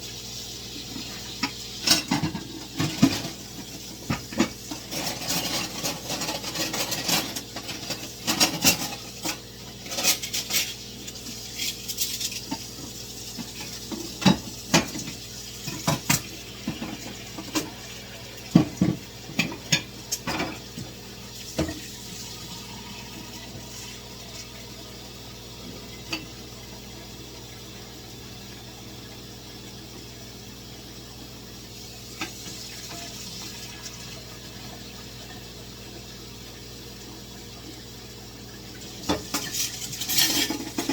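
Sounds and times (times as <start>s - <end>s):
dishes and cutlery clinking: 39.1s - 40.9s.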